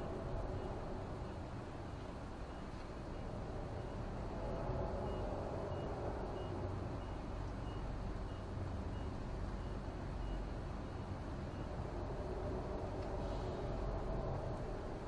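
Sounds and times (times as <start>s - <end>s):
low droning hum: 0.0s - 15.0s
faint high beeps: 5.0s - 11.8s.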